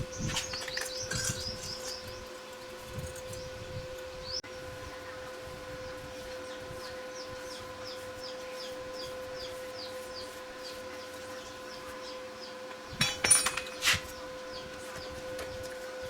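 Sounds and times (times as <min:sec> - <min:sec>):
steady hum: 0:00.0 - 0:16.0
metal tools clinking: 0:00.4 - 0:02.0, 0:13.0 - 0:14.2.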